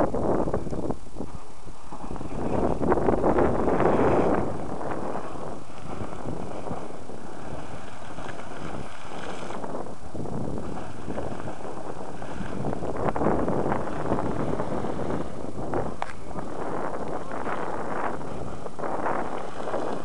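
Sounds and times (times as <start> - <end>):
wind buffeting microphone: 0.0 - 20.0
geyser water splashing: 3.6 - 9.9.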